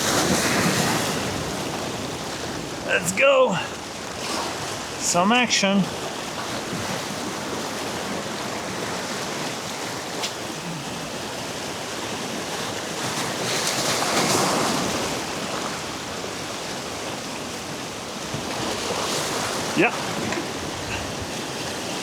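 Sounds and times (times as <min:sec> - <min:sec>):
waves washing against rocks: 0:00.0 - 0:22.0
wind on microphone: 0:18.3 - 0:21.8.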